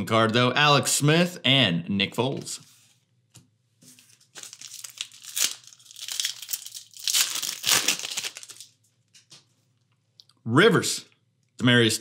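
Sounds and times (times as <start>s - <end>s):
foil wrapper tearing and crinkling: 4.3s - 8.8s.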